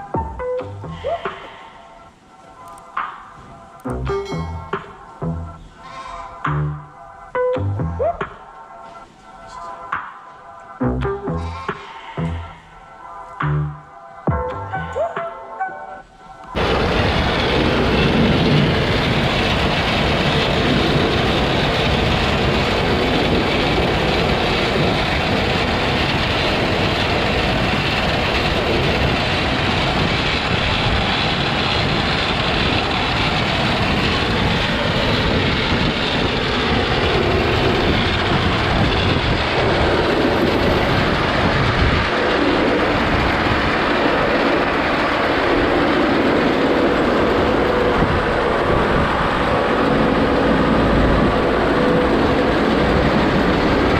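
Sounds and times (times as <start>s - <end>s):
farm machinery running: 16.6s - 53.9s.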